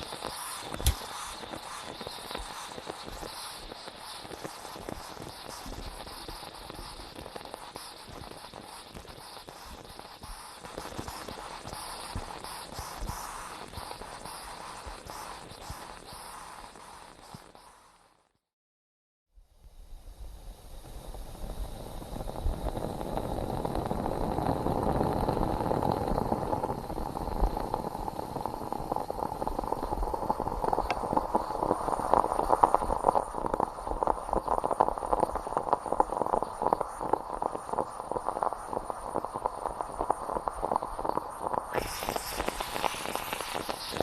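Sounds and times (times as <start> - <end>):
moka pot hissing and gurgling: 0.0 - 18.4, 19.5 - 44.0.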